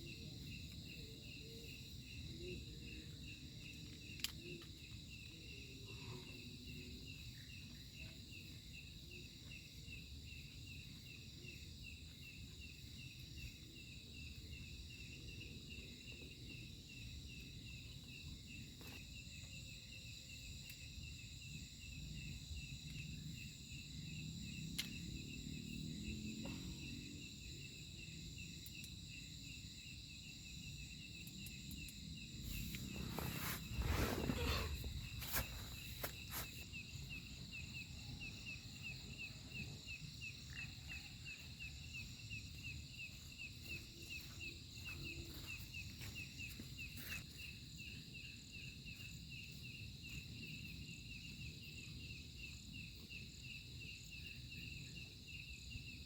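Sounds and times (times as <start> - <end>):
cricket chirping: 0.0 - 56.0
insect high trill: 31.1 - 39.8.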